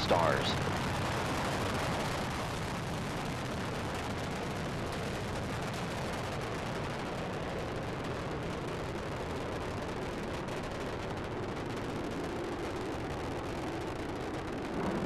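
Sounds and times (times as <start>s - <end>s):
rocket engines roaring: 0.0s - 0.7s, 9.6s - 15.0s.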